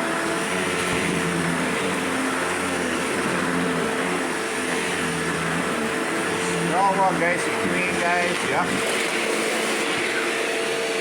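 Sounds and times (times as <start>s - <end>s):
vacuum cleaner running: 0.0s - 11.0s.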